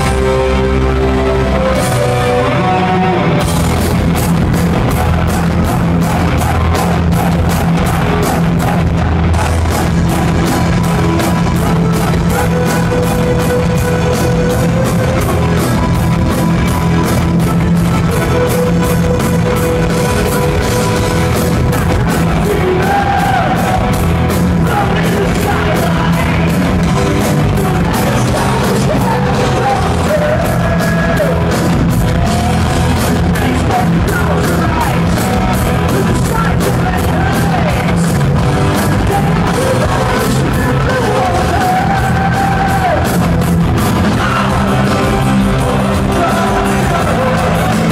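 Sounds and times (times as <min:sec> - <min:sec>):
distorted guitars: 0:00.0 - 0:47.9
heavy metal band playing: 0:00.0 - 0:47.9
fast drumming: 0:03.4 - 0:47.9
man singing: 0:21.6 - 0:47.9.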